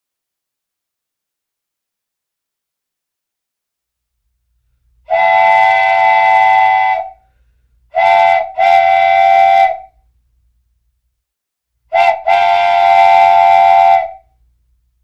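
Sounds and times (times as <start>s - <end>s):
train whistle blasts: 5.1s - 10.0s, 11.9s - 14.4s.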